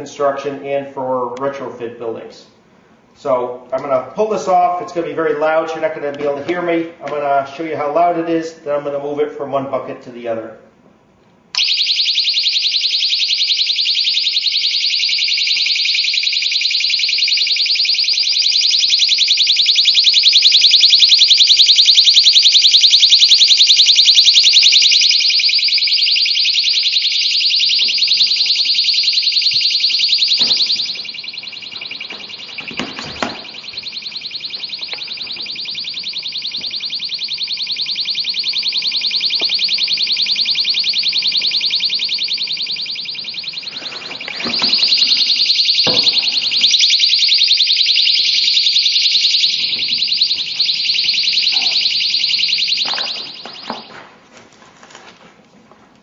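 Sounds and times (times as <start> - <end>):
personal alarm shrieking: 11.5 - 54.0
handling knocks: 30.3 - 31.0, 31.6 - 33.8, 45.8 - 46.6.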